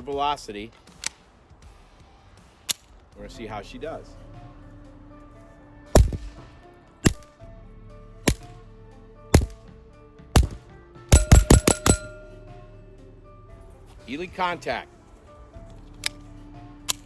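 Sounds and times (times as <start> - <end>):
background music: 0.0 - 17.0
suppressed pistol shots: 6.0 - 6.4, 7.0 - 7.3, 8.3 - 8.5, 9.4 - 9.6, 10.4 - 12.2.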